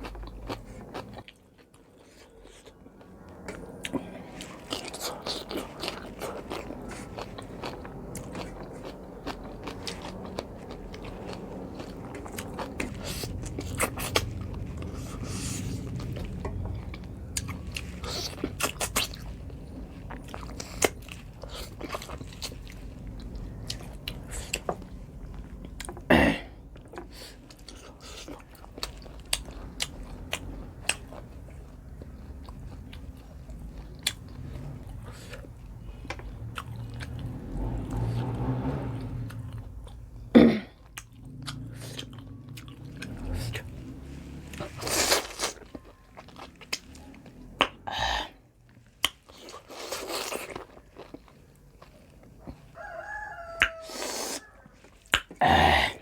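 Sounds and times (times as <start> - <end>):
chewing and biting food: 0.0 - 47.8, 48.6 - 56.0.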